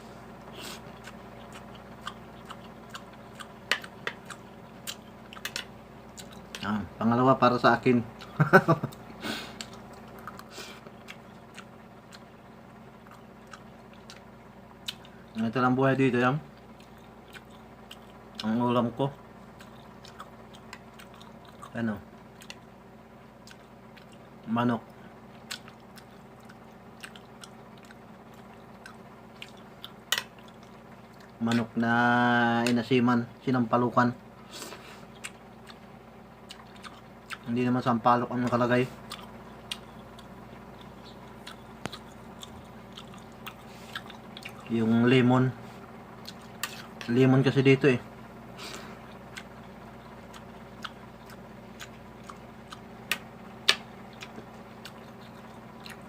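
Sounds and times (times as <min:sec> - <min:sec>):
steady low hum: 0:00.0 - 0:56.0
person chewing: 0:00.5 - 0:06.8, 0:08.1 - 0:15.4, 0:16.5 - 0:18.5, 0:19.4 - 0:31.8, 0:34.4 - 0:37.6, 0:38.4 - 0:44.8, 0:45.7 - 0:47.1, 0:48.5 - 0:56.0
chewing and cutlery clicks: 0:01.0 - 0:06.6
wet mouth clicks: 0:39.0 - 0:44.7.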